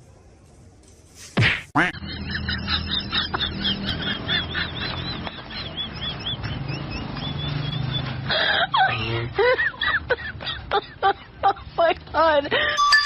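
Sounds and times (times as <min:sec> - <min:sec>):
birds calling: 0:02.1 - 0:08.2.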